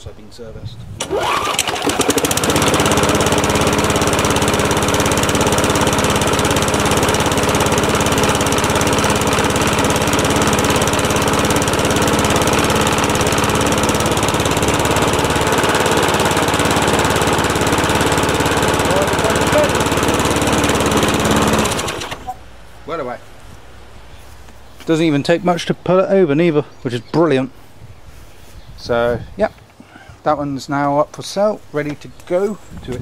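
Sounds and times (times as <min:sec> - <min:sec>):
lawnmower engine running: 0:01.0 - 0:22.4.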